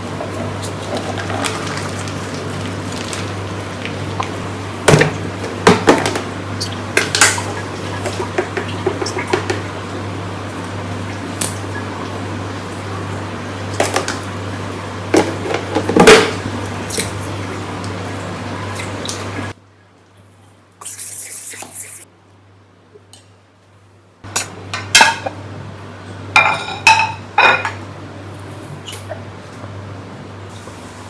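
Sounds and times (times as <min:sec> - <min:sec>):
appliance humming: 0:00.0 - 0:19.6, 0:24.2 - 0:31.0
dishes clinking: 0:15.1 - 0:17.2, 0:24.3 - 0:25.5, 0:26.3 - 0:27.9.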